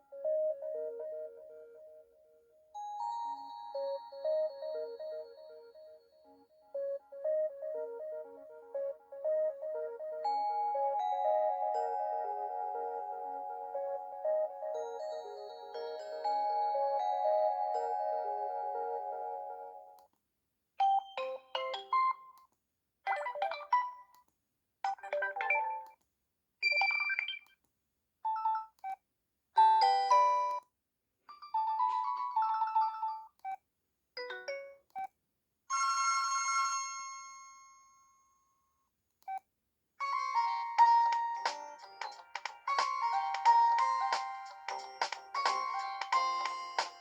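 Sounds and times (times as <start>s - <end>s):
bell-like chime: 14.7s - 19.4s, 35.7s - 38.4s, 40.1s - 47.0s.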